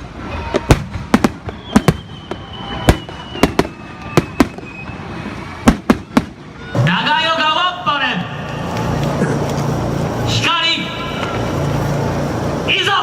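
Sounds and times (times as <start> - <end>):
fireworks bangs: 0.0 - 7.3
faint falling whistle: 1.4 - 5.0.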